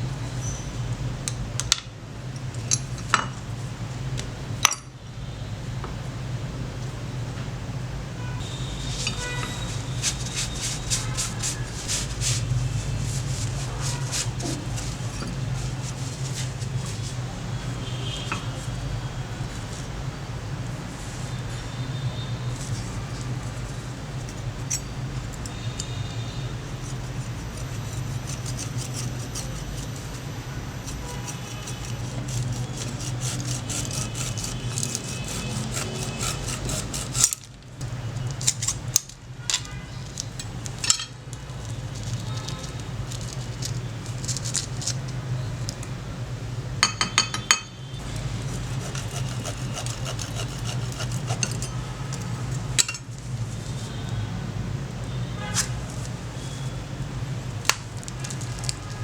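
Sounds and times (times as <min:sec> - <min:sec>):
metallic scraping: 0:08.4 - 0:18.8, 0:46.8 - 0:54.1.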